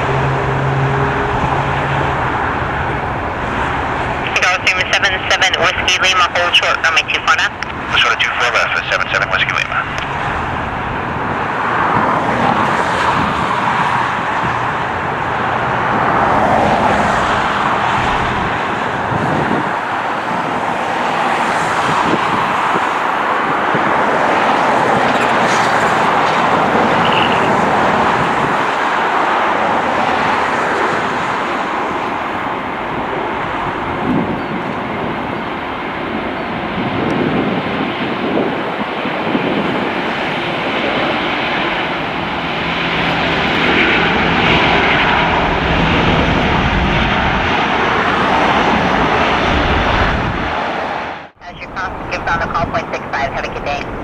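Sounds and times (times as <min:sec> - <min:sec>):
jet engines at takeoff thrust: 0:00.0 - 0:54.0.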